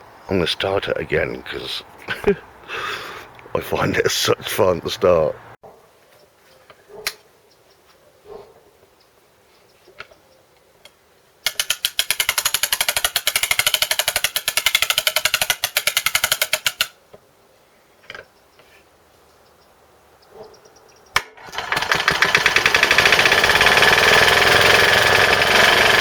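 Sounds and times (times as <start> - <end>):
spring starter ratcheting clicks: 11.4 - 16.9.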